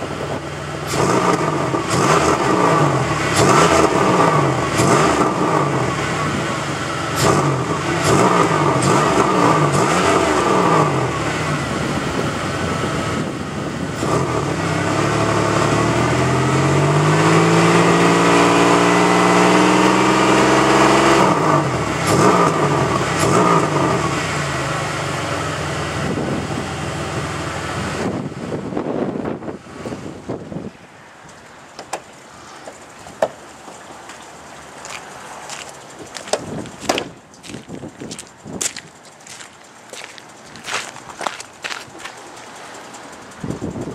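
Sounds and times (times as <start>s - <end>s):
car engine revving: 0.0s - 30.3s.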